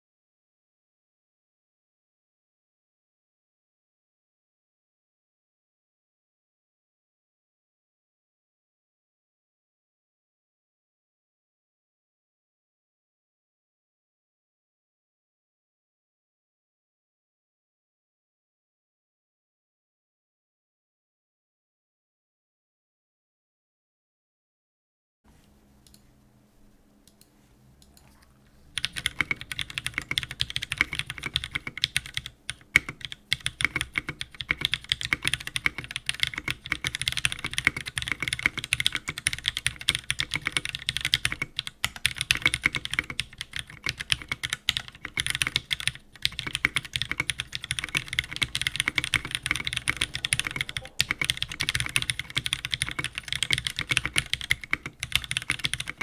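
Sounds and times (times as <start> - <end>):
fast typing on mechanical keyboard: 28.8 - 56.0.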